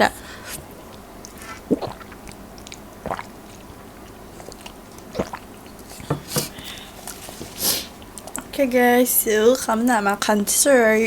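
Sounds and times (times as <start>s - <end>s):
person chewing: 0.4s - 8.5s.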